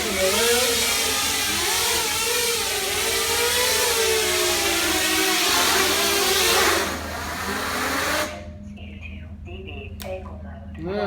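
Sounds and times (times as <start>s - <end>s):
electric propellers whirring: 0.0s - 8.6s.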